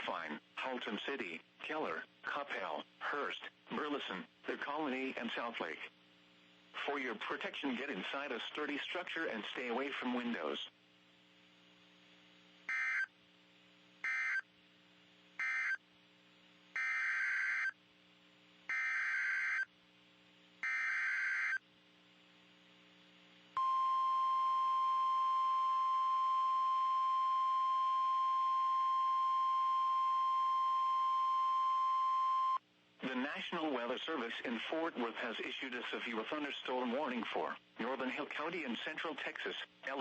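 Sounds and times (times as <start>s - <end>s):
steady warning alarm tone: 12.7s - 13.1s, 14.0s - 14.4s, 15.4s - 15.8s, 16.8s - 17.8s, 18.7s - 19.7s, 20.6s - 21.6s, 23.6s - 32.6s.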